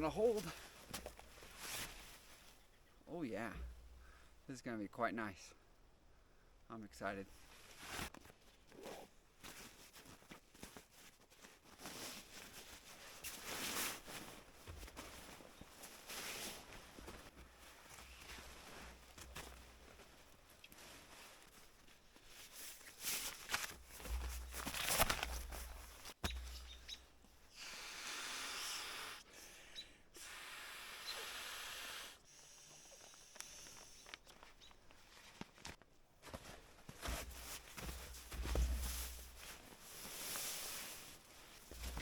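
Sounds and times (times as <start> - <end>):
camping gear rustling: 0.0 - 4.2, 7.4 - 27.4, 33.0 - 42.0.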